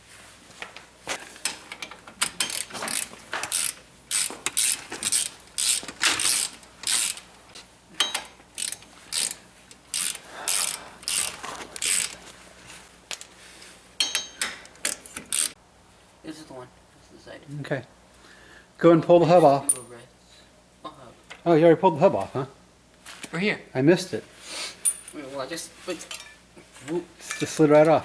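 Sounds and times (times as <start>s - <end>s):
ratchet wrench clicking: 2.3s - 7.2s, 8.1s - 12.2s, 14.1s - 15.6s.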